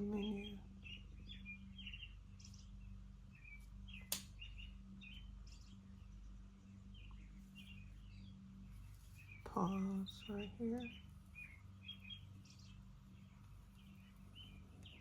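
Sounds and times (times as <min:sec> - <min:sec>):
birds chirping: 0:00.0 - 0:15.0
steady low hum: 0:00.0 - 0:15.0
sharp click: 0:04.0 - 0:04.4.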